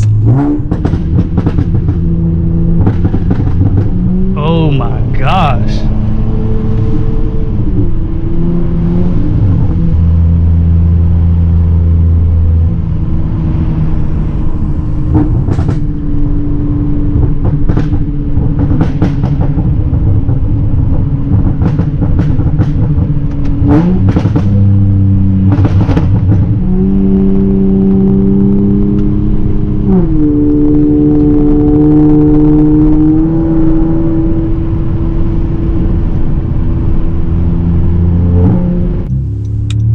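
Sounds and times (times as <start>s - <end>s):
exhaust pops and crackles: 0.0s - 4.0s, 17.1s - 24.7s, 25.4s - 26.6s
loud car exhaust note: 0.0s - 39.9s.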